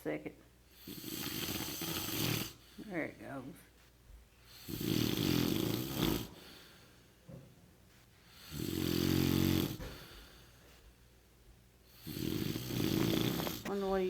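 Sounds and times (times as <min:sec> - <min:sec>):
quiet breathing: 0:00.6 - 0:14.0
man snoring: 0:00.8 - 0:02.6, 0:04.5 - 0:06.6, 0:08.3 - 0:10.1, 0:11.9 - 0:13.7.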